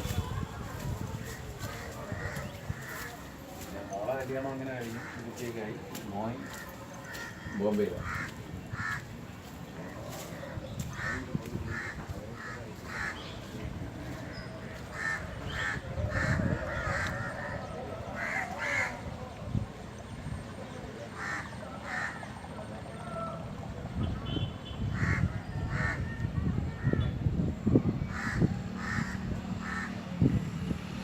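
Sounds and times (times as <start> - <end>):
crows cawing: 1.0 - 19.2, 21.1 - 22.4, 24.9 - 27.0, 28.1 - 30.0.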